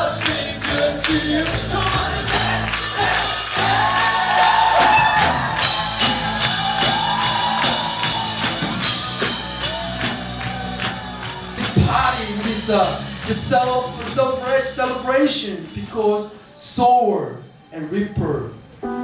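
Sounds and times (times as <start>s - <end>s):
people singing worship music: 0.0s - 4.3s
steady drum beat: 0.0s - 16.0s.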